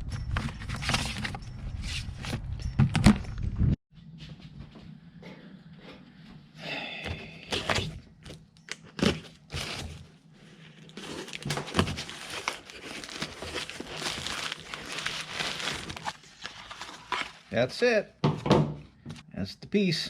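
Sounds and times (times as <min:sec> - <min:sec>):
packaging crinkling and rustling: 0:07.6 - 0:17.5.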